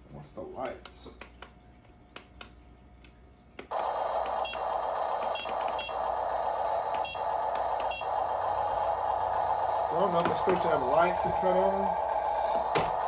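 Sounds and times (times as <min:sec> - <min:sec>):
electronic toy engine sound: 0:03.7 - 0:13.0.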